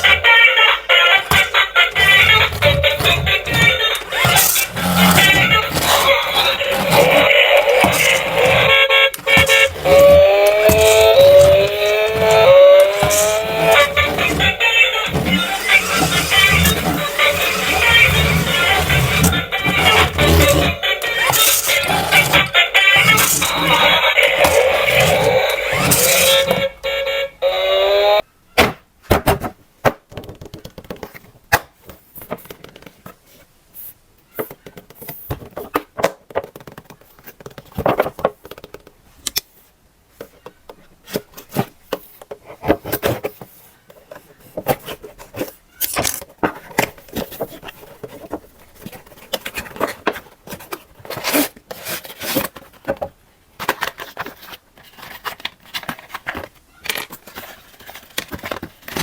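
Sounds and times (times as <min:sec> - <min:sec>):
cardboard and plastic crinkling: 0:01.3 - 0:26.6, 0:41.0 - 0:59.0.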